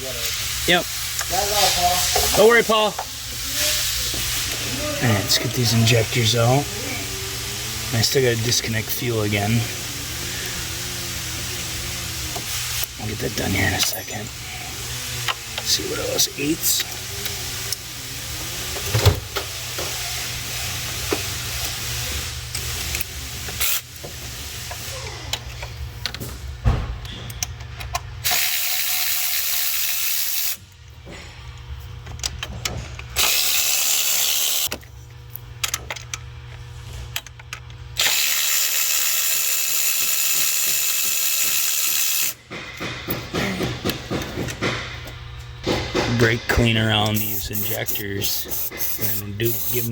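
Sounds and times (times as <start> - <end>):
mechanical hissing bursts: 0.2 - 24.9, 28.2 - 30.6, 33.2 - 34.7, 38.0 - 42.4, 46.6 - 49.9
tools clicking on engine: 46.2 - 49.9.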